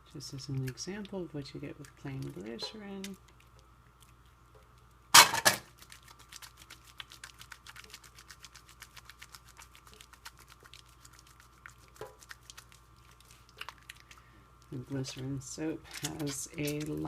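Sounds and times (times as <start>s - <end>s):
hands lathering soap: 5.7s - 17.0s.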